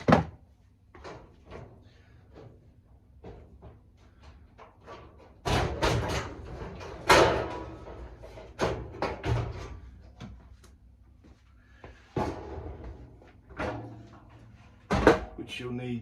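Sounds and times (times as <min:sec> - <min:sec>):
metal dryer drum clattering: 0:04.7 - 0:10.1, 0:12.2 - 0:15.4.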